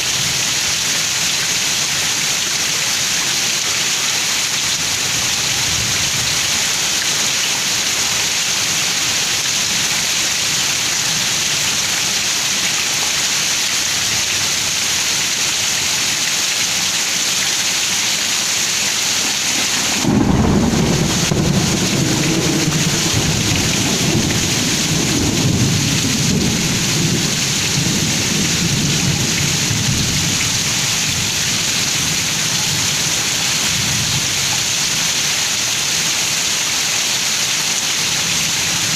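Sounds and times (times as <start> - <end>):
heavy rain pouring: 0.0 - 38.9
thunderclap rumbling: 19.2 - 30.3.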